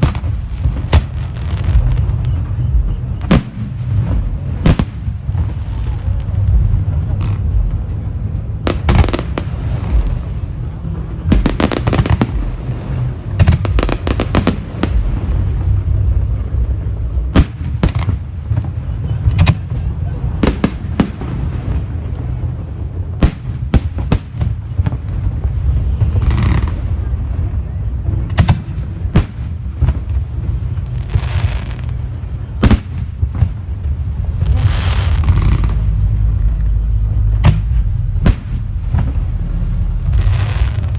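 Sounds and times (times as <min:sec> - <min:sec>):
firework crackles: 0:00.0 - 0:40.9
steady low rumble: 0:00.0 - 0:40.9.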